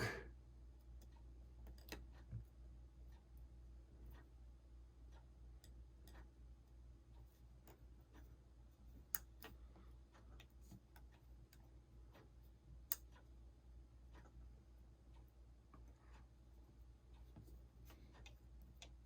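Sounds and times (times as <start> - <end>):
small parts ticking and tapping: 0.7 - 4.4, 5.1 - 19.0.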